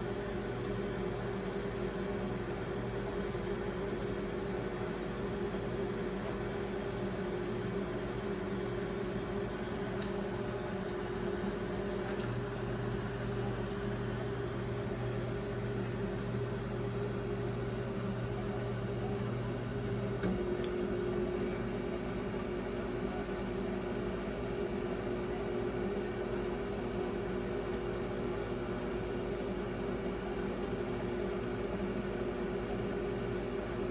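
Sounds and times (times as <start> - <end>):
microwave oven humming: 0.0 - 33.9.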